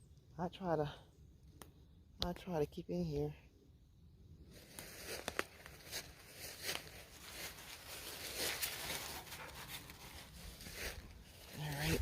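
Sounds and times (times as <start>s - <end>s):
footsteps crunching on forest floor: 4.5s - 12.0s.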